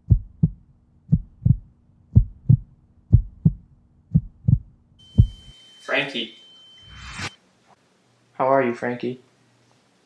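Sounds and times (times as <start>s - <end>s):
heartbeat thumps: 0.0s - 5.5s
faint low hum: 0.0s - 10.0s.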